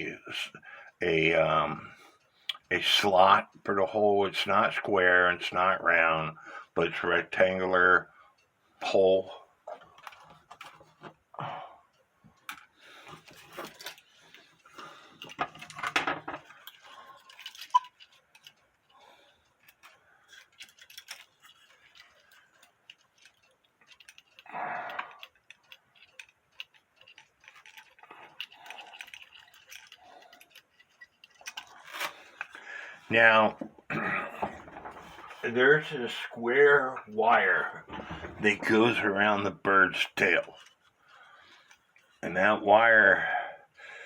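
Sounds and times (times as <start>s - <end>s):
hand tools clicking and tapping: 12.4s - 32.6s.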